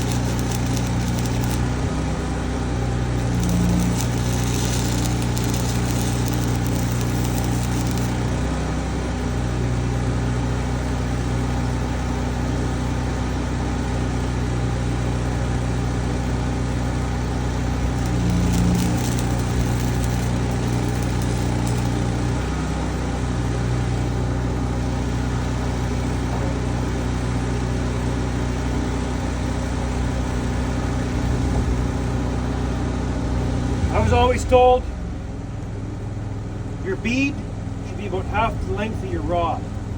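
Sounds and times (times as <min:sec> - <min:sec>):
stick welder hissing and crackling: 0:00.0 - 0:02.2, 0:02.9 - 0:08.8, 0:16.7 - 0:24.0
engine running: 0:00.0 - 0:39.9.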